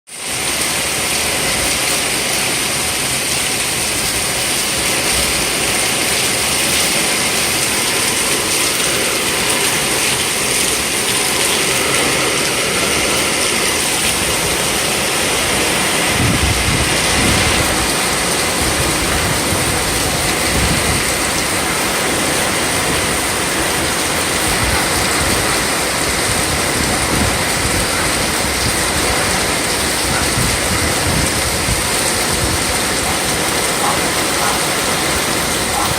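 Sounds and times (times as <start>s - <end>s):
heavy rain pouring: 0.1s - 35.9s
wind buffeting microphone: 12.8s - 35.9s.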